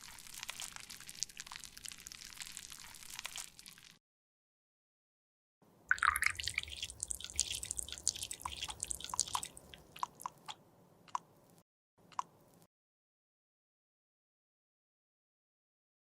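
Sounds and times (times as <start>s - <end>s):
liquid dripping and clicking: 0.0s - 4.0s, 5.9s - 11.3s.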